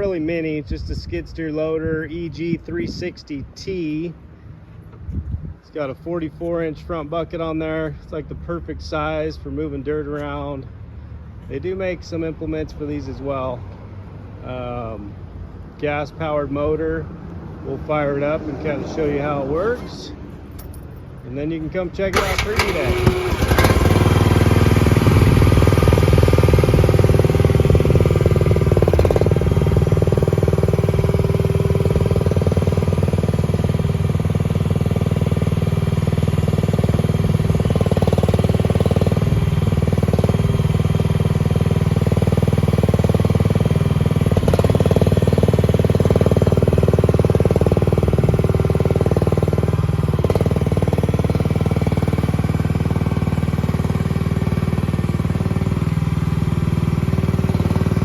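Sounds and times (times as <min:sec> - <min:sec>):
loader engine running: 0:22.1 - 0:58.0.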